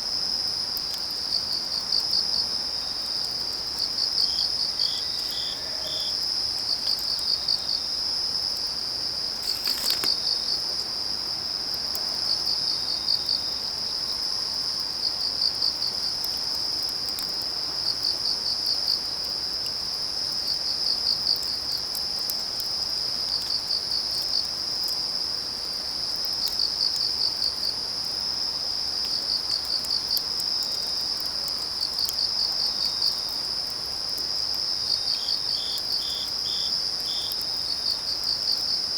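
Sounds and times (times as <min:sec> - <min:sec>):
crickets trilling and chirping: 0:00.2 - 0:38.9
firewood crackling: 0:09.4 - 0:10.6.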